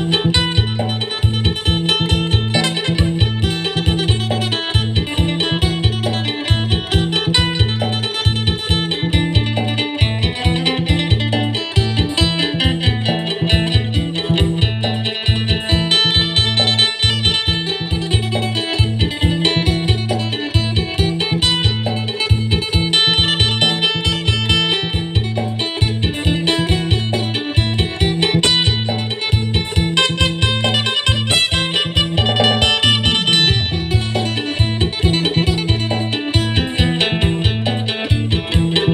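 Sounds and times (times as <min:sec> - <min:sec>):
plucked lute melody: 0:00.0 - 0:38.9
pulsing low accompaniment: 0:00.0 - 0:38.9.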